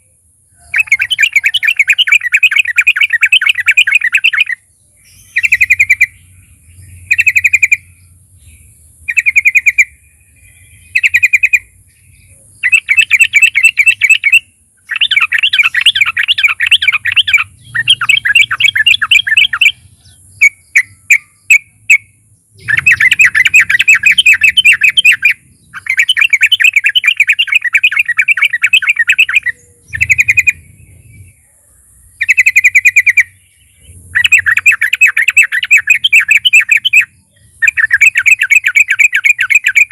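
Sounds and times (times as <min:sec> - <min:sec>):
bird bubbling chatter song: 0:00.0 - 0:31.4, 0:32.1 - 0:39.9
sharp bird notes: 0:00.0 - 0:31.4, 0:32.1 - 0:39.9.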